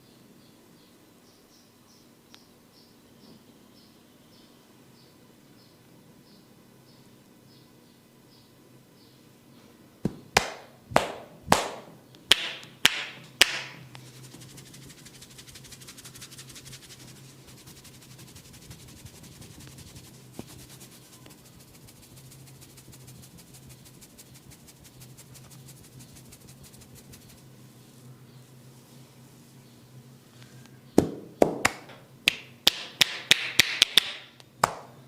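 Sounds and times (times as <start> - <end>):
hand slaps on head: 10.0 - 13.8
fingers rubbing through hair: 13.9 - 28.1.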